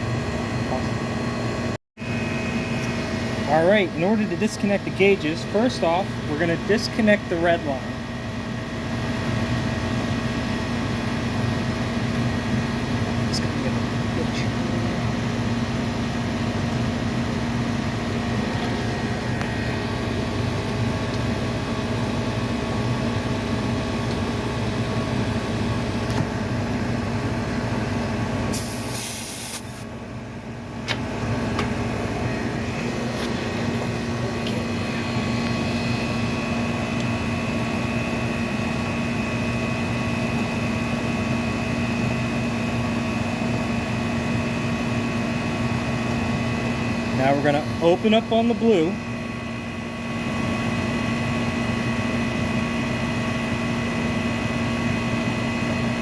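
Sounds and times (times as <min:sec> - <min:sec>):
air conditioning unit humming: 0:00.0 - 0:56.0
high-pitched hiss: 0:28.6 - 0:29.8.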